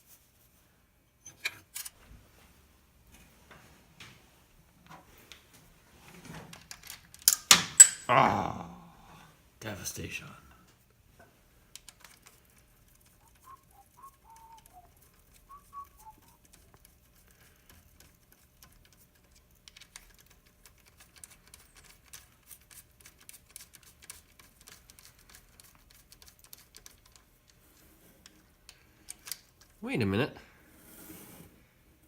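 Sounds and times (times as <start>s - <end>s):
faint high chirps: 13.2s - 16.5s.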